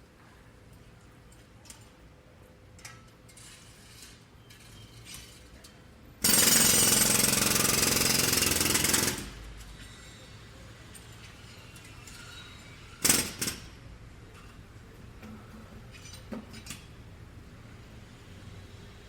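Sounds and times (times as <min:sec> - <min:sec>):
construction site background: 0:00.0 - 0:19.0
jackhammer breaking concrete: 0:06.2 - 0:09.5, 0:13.0 - 0:13.7.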